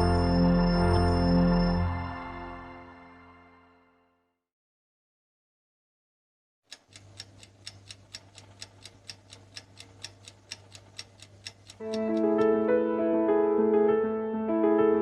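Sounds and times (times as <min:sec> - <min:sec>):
piano music: 0:00.0 - 0:04.0, 0:11.8 - 0:15.0
clock ticking: 0:06.7 - 0:12.5.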